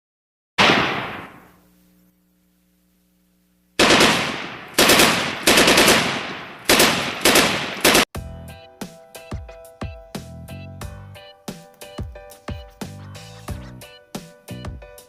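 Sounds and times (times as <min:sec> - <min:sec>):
gunshots with echo: 0:00.6 - 0:01.6, 0:03.8 - 0:08.1.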